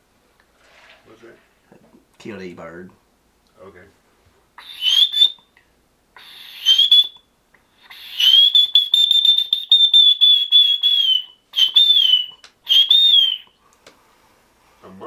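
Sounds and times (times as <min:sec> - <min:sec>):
man whistling bird call: 0:04.6 - 0:05.5, 0:06.2 - 0:13.6.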